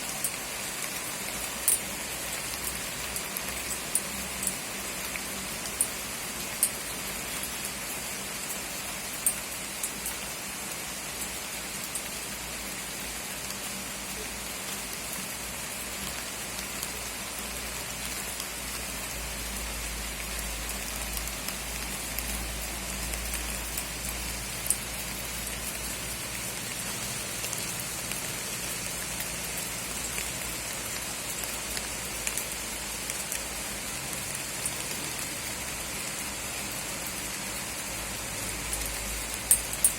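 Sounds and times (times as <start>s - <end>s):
rain hissing: 0.0s - 39.9s
raindrops ticking: 0.0s - 39.9s.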